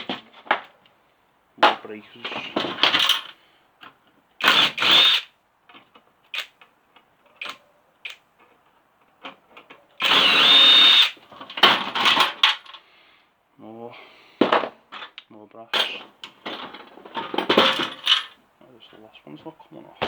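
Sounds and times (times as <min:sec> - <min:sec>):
power drill whining: 0:04.4 - 0:05.3, 0:10.0 - 0:11.2.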